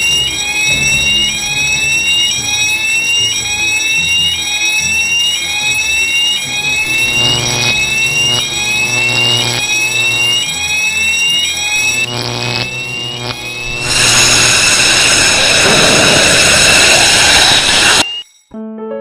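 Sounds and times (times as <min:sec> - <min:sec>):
fire alarm rising sweeps: 0:00.0 - 0:18.4
loud rushing bursts: 0:13.8 - 0:18.1.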